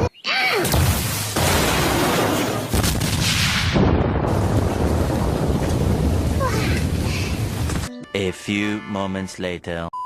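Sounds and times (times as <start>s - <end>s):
magic explosion blast and rumble: 0.8s - 7.7s.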